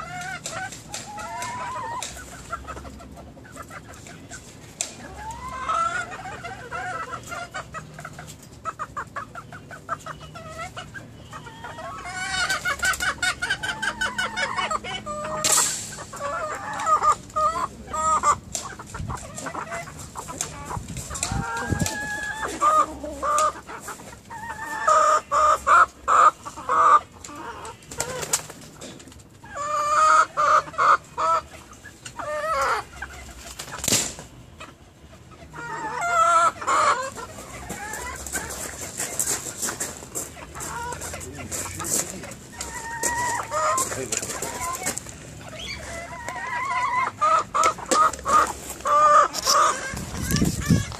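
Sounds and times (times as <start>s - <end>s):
chickens clucking: 0.0s - 50.9s.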